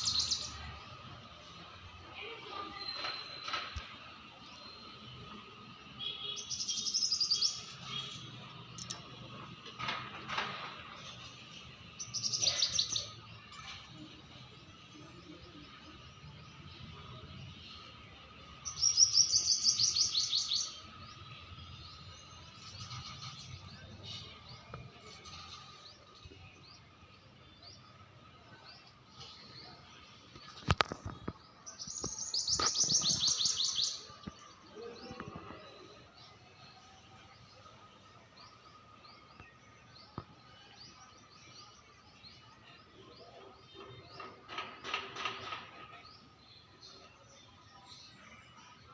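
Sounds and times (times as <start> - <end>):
small bird chirping: 30.4 - 34.1.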